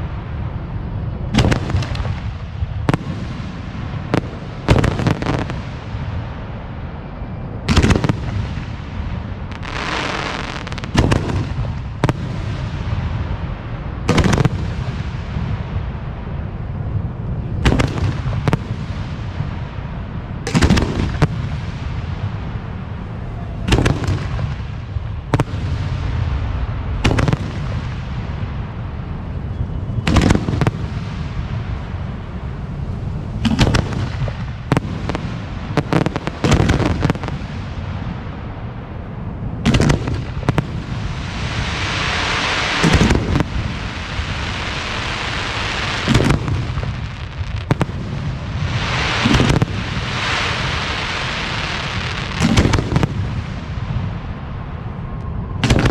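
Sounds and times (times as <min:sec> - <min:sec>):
crackling hiss of firework stars: 0:00.0 - 0:55.9
firework shells booming: 0:01.3 - 0:06.4, 0:07.6 - 0:15.9, 0:17.6 - 0:19.8, 0:20.4 - 0:22.7, 0:23.6 - 0:29.1, 0:29.7 - 0:38.5, 0:39.6 - 0:54.2, 0:55.6 - 0:55.9.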